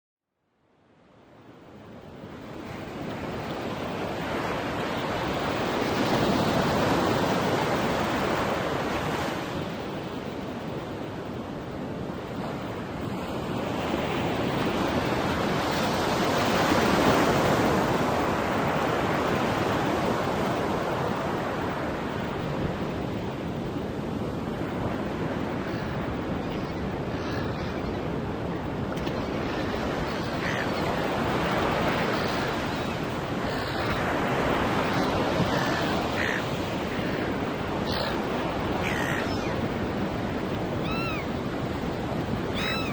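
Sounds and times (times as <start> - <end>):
waves breaking on a beach: 0.6 - 42.9.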